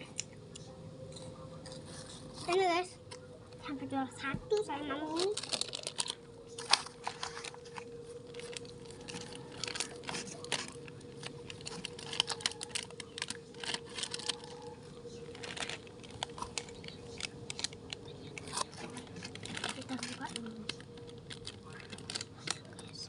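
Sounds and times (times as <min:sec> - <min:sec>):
faint steady hum: 0:00.0 - 0:23.0
biscuit sticks crunching: 0:05.1 - 0:23.0.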